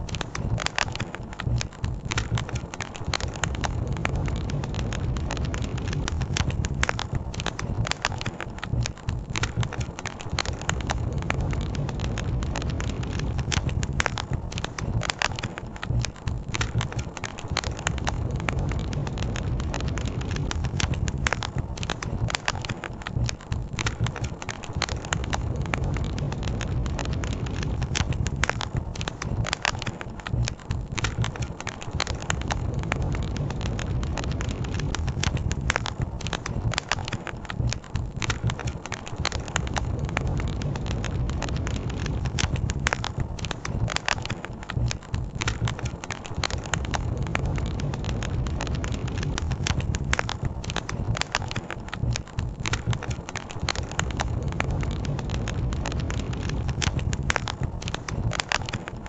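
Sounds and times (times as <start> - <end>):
campfire crackling and popping: 0.0 - 59.0.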